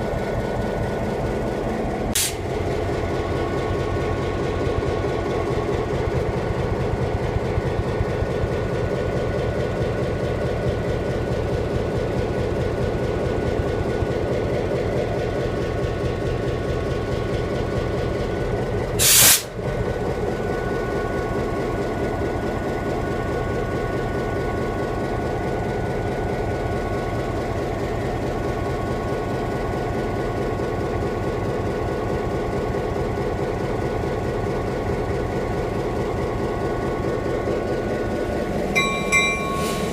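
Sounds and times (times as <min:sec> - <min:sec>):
train rolling rumble: 0:00.0 - 0:39.9
loud burst of noise: 0:19.0 - 0:19.5.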